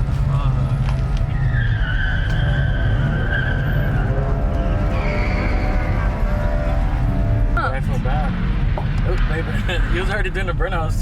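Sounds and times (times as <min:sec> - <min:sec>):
truck tyres squealing: 0:00.0 - 0:07.6.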